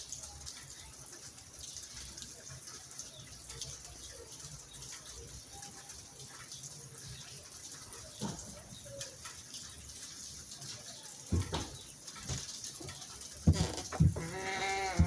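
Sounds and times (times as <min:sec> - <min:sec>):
faint background noise: 0:00.0 - 0:15.0
knocks and thumps: 0:11.3 - 0:12.5, 0:13.4 - 0:15.0.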